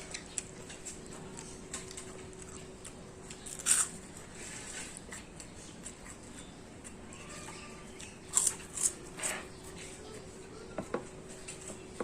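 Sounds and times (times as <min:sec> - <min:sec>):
chewing clicks: 0:00.0 - 0:04.0.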